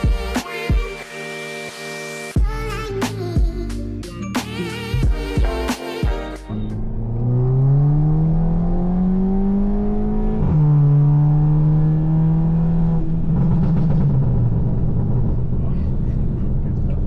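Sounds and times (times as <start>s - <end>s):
car engine accelerating hard: 6.8s - 17.0s.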